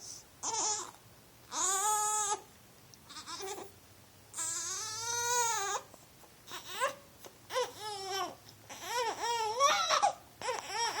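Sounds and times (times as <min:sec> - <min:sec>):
young child crying and whining: 0:06.5 - 0:11.0.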